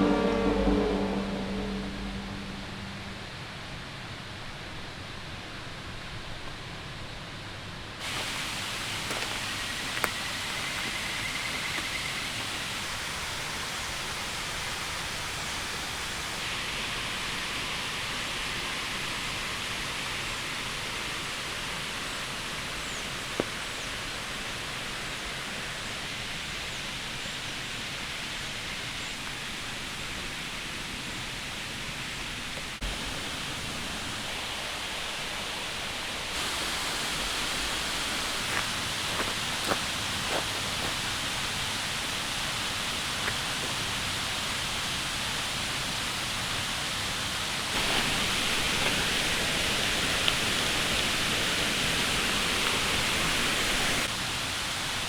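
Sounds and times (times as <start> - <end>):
river rushing: 8.0 - 16.2, 32.9 - 44.8, 47.5 - 55.0.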